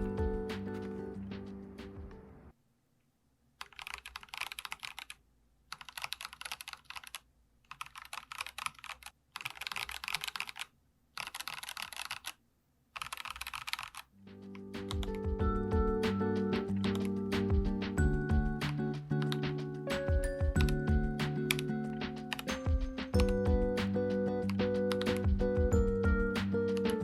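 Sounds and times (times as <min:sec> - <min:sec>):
music: 0:00.0 - 0:02.5, 0:14.2 - 0:27.0
mechanical keyboard typing: 0:03.6 - 0:12.4, 0:13.0 - 0:17.9, 0:18.6 - 0:23.8, 0:24.4 - 0:27.0.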